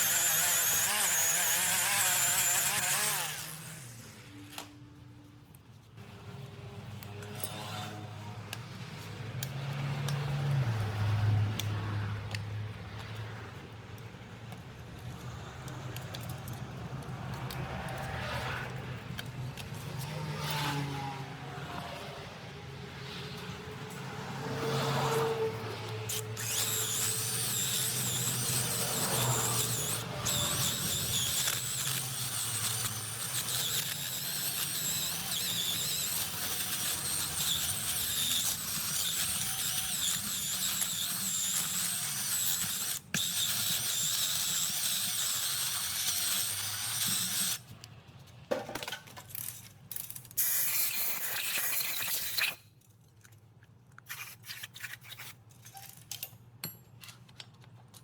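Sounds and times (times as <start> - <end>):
power tool whining and scraping: 0.0 - 4.8, 6.0 - 9.5, 17.2 - 47.8.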